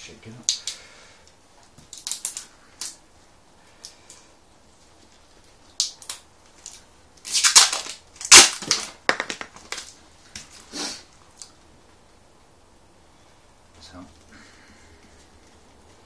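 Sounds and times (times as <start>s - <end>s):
plastic bottle crackling and knocking: 7.4s - 10.0s.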